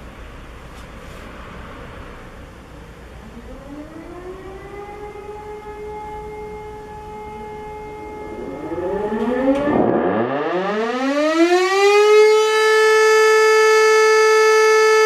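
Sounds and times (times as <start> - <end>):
electric rotary siren: 3.2 - 15.0.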